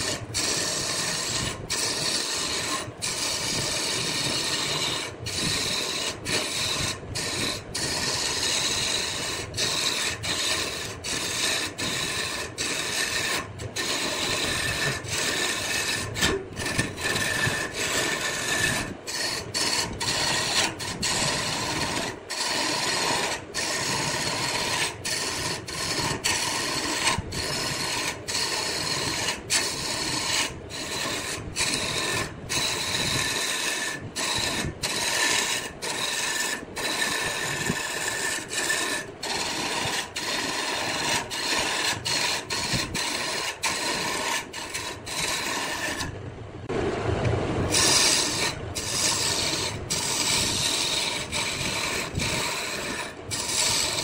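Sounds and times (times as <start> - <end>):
tool scraping wood on lathe: 0.0 - 46.2, 47.7 - 54.0.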